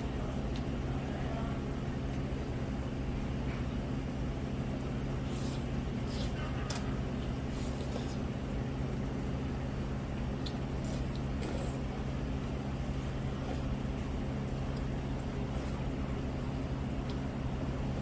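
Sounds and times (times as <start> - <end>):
low mechanical hum: 0.0 - 18.0
noodles being slurped: 5.2 - 6.4, 7.5 - 8.3, 10.7 - 11.9, 13.0 - 13.8, 15.4 - 16.0.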